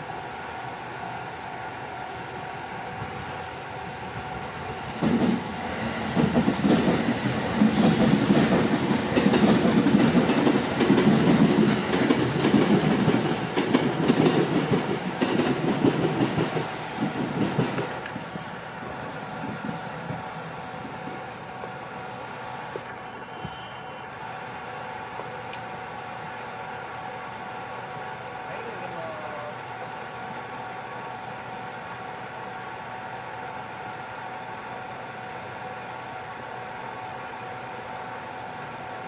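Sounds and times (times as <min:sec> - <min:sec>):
train wheels clattering over rail joints: 0:06.1 - 0:18.3.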